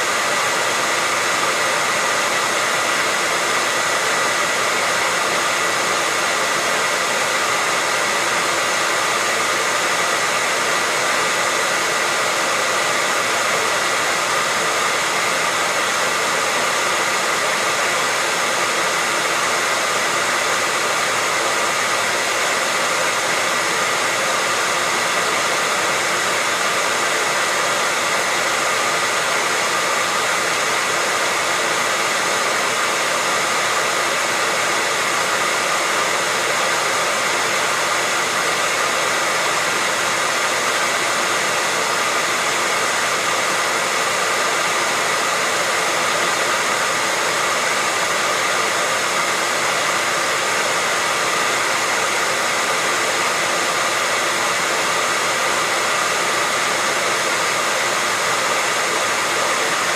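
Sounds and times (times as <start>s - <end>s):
hair dryer running: 0.0s - 59.9s.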